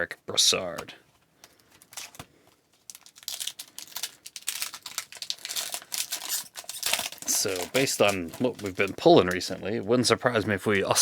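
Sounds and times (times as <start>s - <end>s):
wrapper tearing and crinkling: 1.7s - 9.6s.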